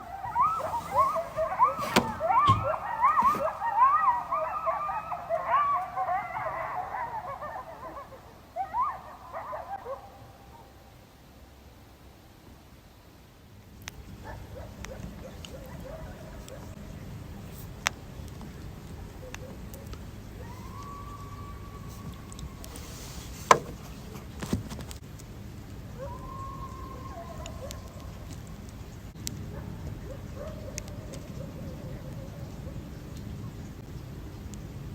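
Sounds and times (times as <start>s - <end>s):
coyotes yipping and howling: 0.0s - 11.0s, 14.1s - 17.1s, 18.3s - 23.9s, 25.8s - 28.8s, 29.5s - 33.6s.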